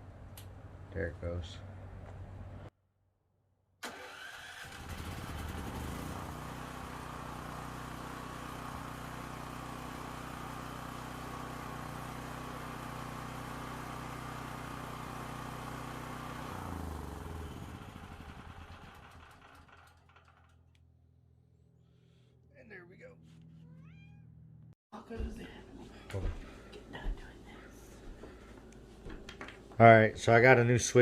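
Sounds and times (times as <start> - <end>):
generator engine running: 3.9 - 20.5.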